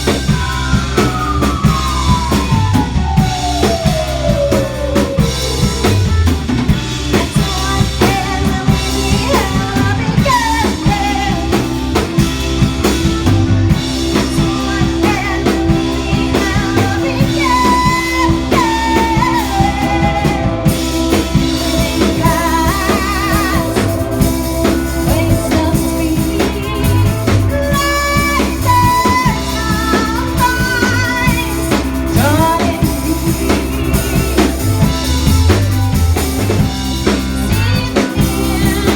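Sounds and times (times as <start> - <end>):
person singing: 0.0 - 35.8, 37.0 - 38.9
drum kit beat: 0.0 - 38.9
guitar: 0.0 - 38.9.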